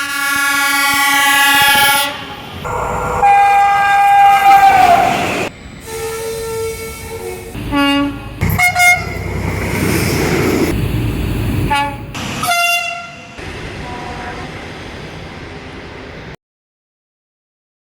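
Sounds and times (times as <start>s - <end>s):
train horn blasts: 0.0s - 9.4s, 11.7s - 14.6s
train running rumble: 0.5s - 16.4s.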